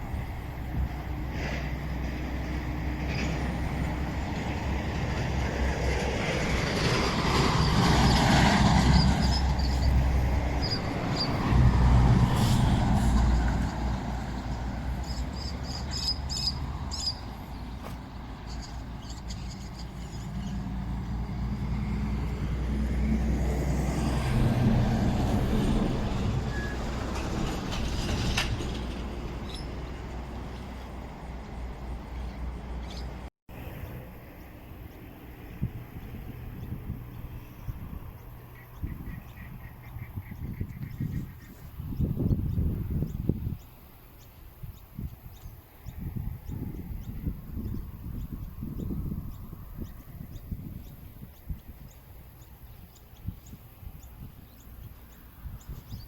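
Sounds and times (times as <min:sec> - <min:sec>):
vehicle engines passing: 0:00.0 - 0:56.0
bird chirps: 0:15.0 - 0:20.6.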